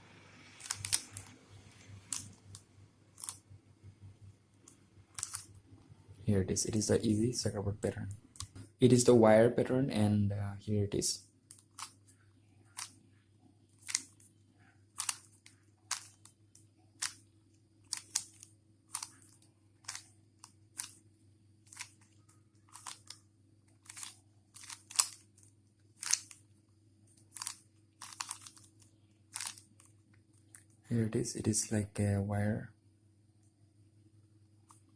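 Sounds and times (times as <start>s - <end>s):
faint low hum: 0.0s - 34.9s
plastic cube twisting clicks: 0.6s - 1.3s, 4.7s - 5.5s, 15.0s - 16.4s, 17.9s - 21.0s, 22.7s - 23.2s, 23.8s - 26.4s, 27.3s - 29.9s.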